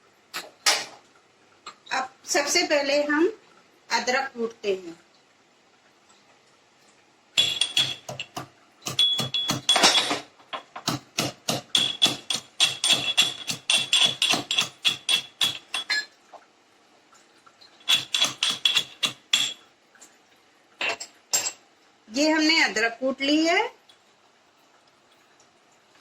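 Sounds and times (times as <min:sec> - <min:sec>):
pestle pounding ginger: 0:07.4 - 0:09.8, 0:10.8 - 0:15.9, 0:17.9 - 0:19.5.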